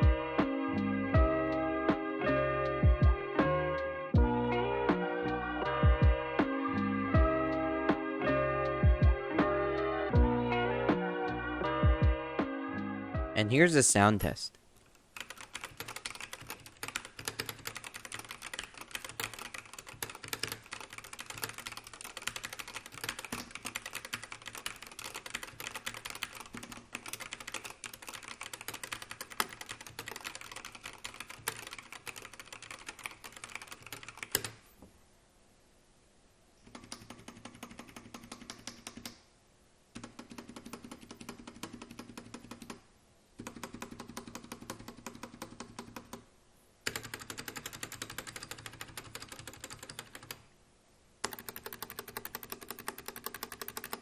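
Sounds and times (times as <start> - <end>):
mechanical keyboard typing: 15.2 - 34.6, 36.7 - 39.1, 40.0 - 42.8, 43.4 - 46.2, 46.8 - 50.4, 51.2 - 54.0.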